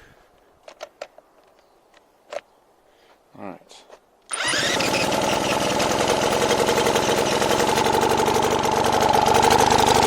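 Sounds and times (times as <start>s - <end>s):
outboard motor running: 4.4s - 10.0s.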